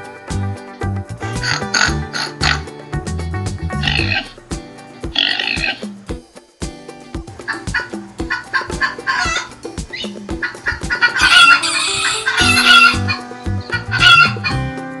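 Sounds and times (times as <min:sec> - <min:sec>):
music with a steady beat: 0:00.0 - 0:15.0
chickens clucking: 0:07.5 - 0:14.6
rooster crowing: 0:10.6 - 0:14.5.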